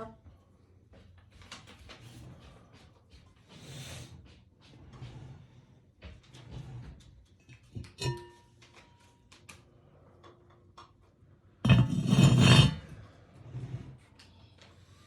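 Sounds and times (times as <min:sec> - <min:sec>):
cast iron pot lid clinking: 0:08.0 - 0:08.4
loud rough scrape: 0:11.6 - 0:14.0.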